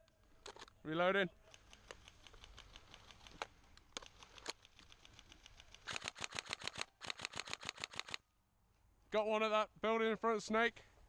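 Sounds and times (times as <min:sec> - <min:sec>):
airsoft gun rapid firing: 0:05.8 - 0:08.2
distant gunfire clicking: 0:05.8 - 0:08.2.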